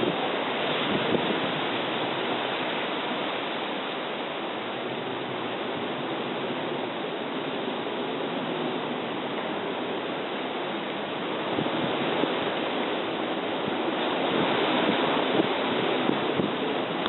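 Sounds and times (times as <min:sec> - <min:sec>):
storm wind rushing: 0:00.0 - 0:03.3, 0:11.3 - 0:17.0.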